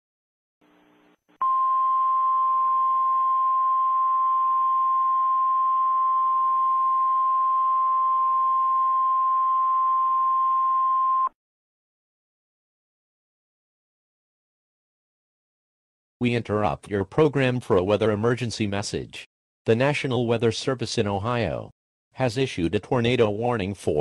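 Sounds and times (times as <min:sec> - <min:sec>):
loud steady electronic tone: 0:00.7 - 0:11.3.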